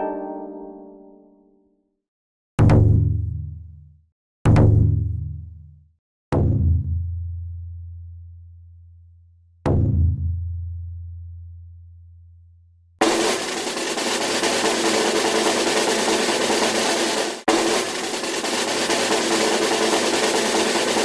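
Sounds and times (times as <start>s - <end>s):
snare drum roll: 13.0s - 21.0s.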